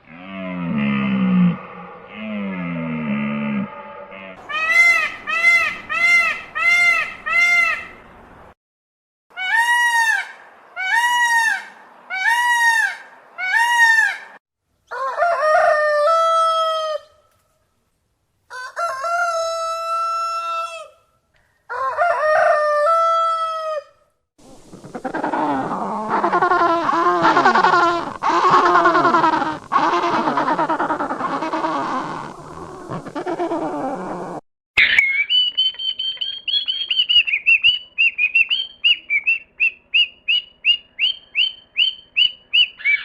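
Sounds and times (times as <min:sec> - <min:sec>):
chickens calling: 0:04.4 - 0:08.1, 0:24.4 - 0:43.0
rooster crowing: 0:14.9 - 0:17.2, 0:18.5 - 0:21.0, 0:21.7 - 0:24.0.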